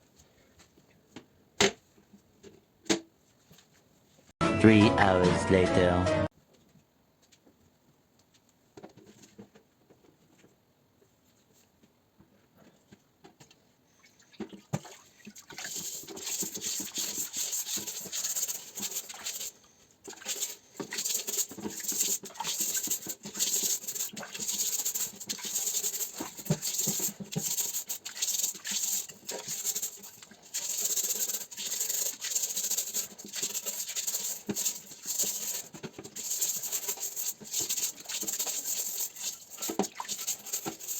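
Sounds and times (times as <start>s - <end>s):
brush scrubbing metal helmet: 14.9s - 40.9s.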